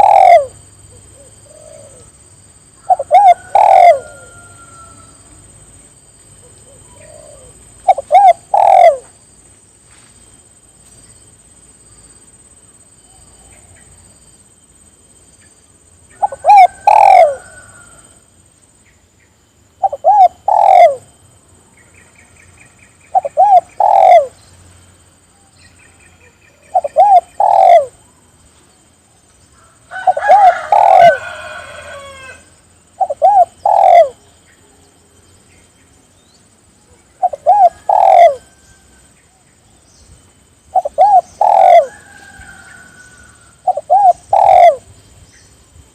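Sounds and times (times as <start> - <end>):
dove cooing: 0.0 - 2.2, 2.8 - 5.2, 6.4 - 9.1, 16.1 - 18.1, 19.8 - 21.1, 23.1 - 24.4, 26.5 - 28.0, 30.0 - 32.4, 33.0 - 34.3, 37.0 - 38.9, 40.7 - 42.5, 43.5 - 45.0
small bird chirping: 39.6 - 41.9.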